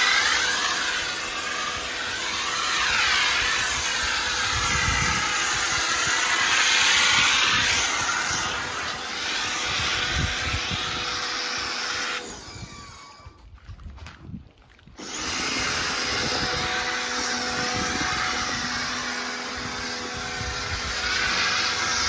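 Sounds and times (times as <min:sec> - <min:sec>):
pump motor hum: 0:00.0 - 0:13.4, 0:15.0 - 0:22.0
pressure washer spray hiss: 0:02.5 - 0:11.9.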